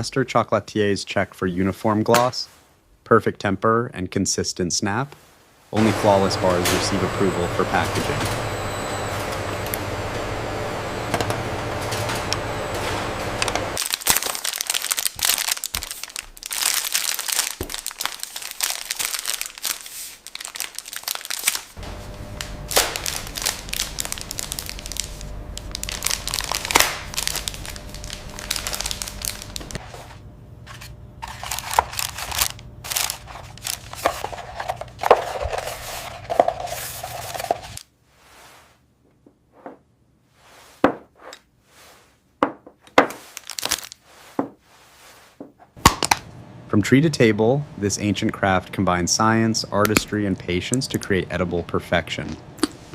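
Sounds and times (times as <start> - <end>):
packaging machinery hum: 5.8 - 37.8, 45.8 - 52.9
wrappers crinkling: 13.8 - 37.9, 43.1 - 44.4.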